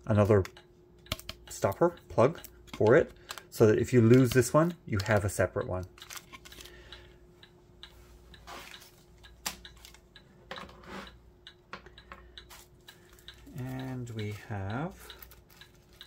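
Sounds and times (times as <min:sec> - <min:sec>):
plastic trays clicking and tapping: 0:00.2 - 0:01.5.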